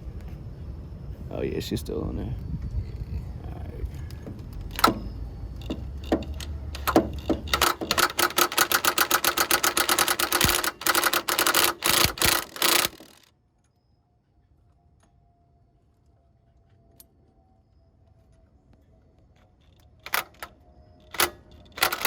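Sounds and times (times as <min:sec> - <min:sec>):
ratchet clicking: 0:04.6 - 0:13.3, 0:20.0 - 0:22.0.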